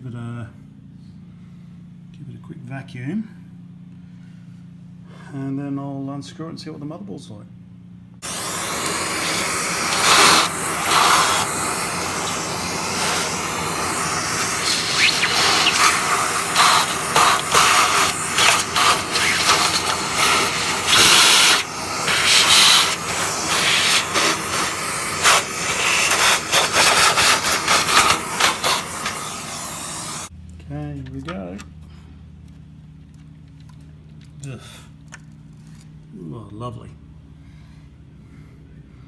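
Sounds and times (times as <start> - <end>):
vacuum cleaner running: 8.2 - 30.3.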